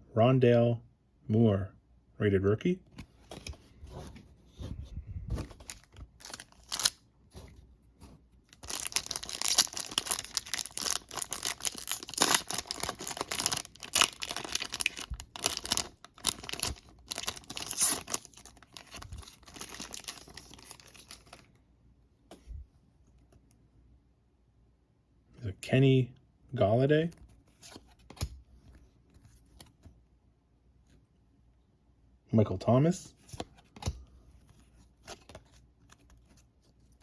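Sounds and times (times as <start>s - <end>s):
plastic foil crinkling and tearing: 5.6s - 7.0s, 8.5s - 21.4s.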